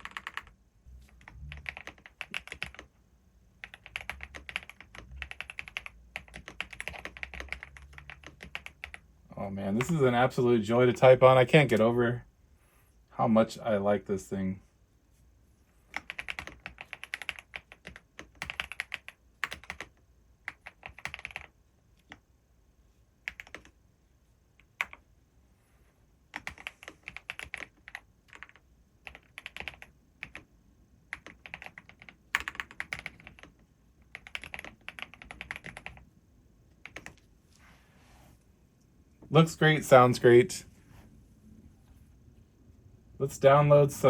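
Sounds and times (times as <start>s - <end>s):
mechanical keyboard typing: 0.0s - 0.5s, 1.1s - 3.0s, 3.6s - 9.0s, 15.9s - 22.2s, 23.3s - 23.8s, 24.7s - 25.0s, 26.3s - 30.5s, 31.1s - 36.0s, 36.8s - 37.2s.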